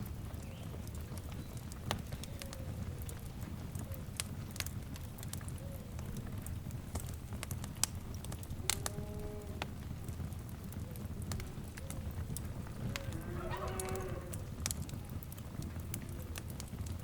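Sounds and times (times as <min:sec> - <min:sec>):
wood fire crackling: 0:00.0 - 0:17.0
faint pitched call: 0:13.0 - 0:14.4.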